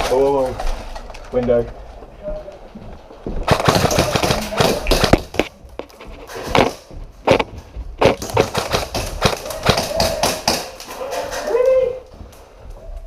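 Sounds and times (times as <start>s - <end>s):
sharp knocks and snaps: 2.9s - 11.6s.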